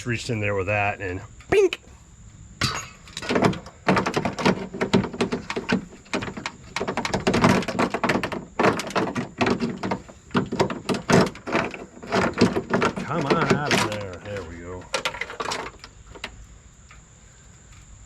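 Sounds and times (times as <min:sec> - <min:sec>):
metal latch parts rattling: 0:02.6 - 0:16.4.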